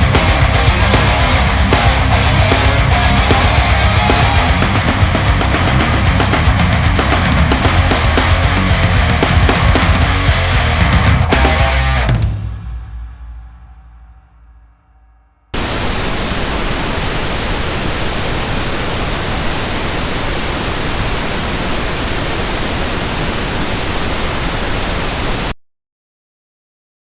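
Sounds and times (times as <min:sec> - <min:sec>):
pink noise hiss: 0:00.0 - 0:06.1, 0:15.6 - 0:25.6.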